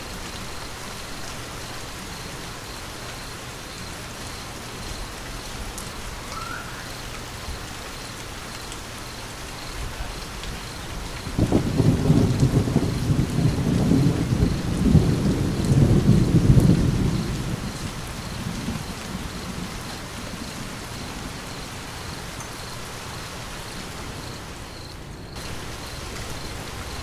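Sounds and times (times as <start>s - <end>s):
steady rain: 0.0s - 27.0s
thunder rumbling: 9.8s - 27.0s.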